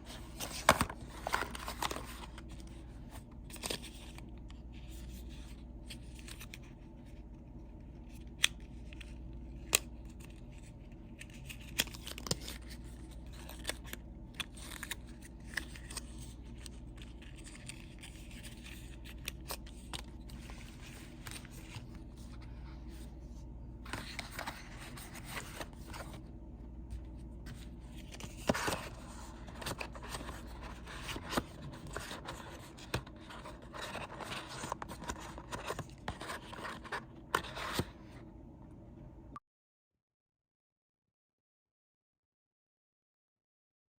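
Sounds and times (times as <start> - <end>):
packaging rustling and scraping: 0.0 - 6.8, 10.0 - 26.3, 27.0 - 38.1
faint low hum: 0.0 - 39.4.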